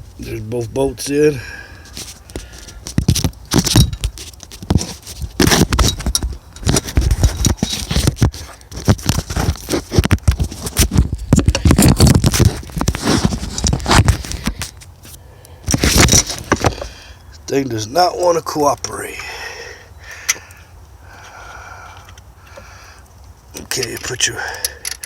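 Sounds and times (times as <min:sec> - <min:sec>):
metal parts clunking and scraping: 0:01.8 - 0:18.0, 0:23.6 - 0:25.0.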